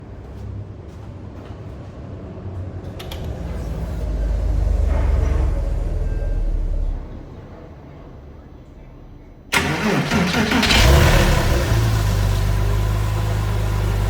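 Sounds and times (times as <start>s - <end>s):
car engine starting and idling: 2.9s - 14.0s.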